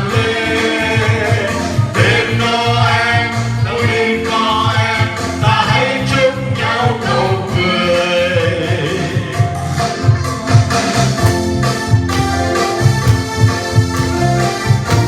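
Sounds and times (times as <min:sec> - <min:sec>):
people singing with accompaniment: 0:00.0 - 0:15.0
steady bass pulse: 0:09.6 - 0:15.0.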